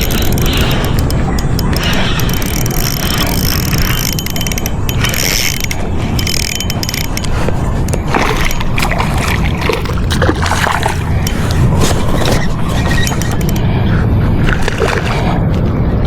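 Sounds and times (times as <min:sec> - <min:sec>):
fishing reel gears whirring: 0:00.0 - 0:13.8.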